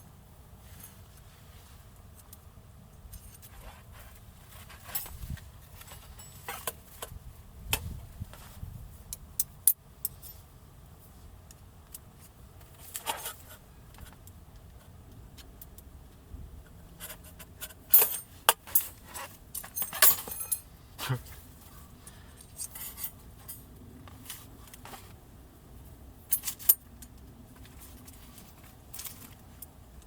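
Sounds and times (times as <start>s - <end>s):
clicks and clinks of small objects: 17.6s - 20.6s.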